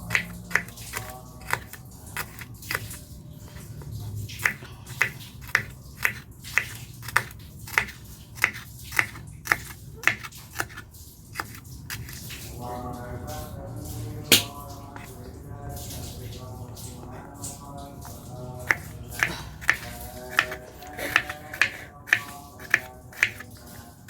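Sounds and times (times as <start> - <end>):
knife chopping on cutting board: 0.0 - 3.0, 4.4 - 10.8, 14.3 - 14.6, 18.0 - 23.7.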